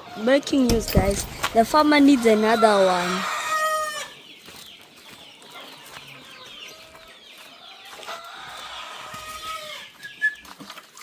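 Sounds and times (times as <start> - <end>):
chickens clucking: 0.0 - 10.6
sharp knock: 0.7 - 1.6.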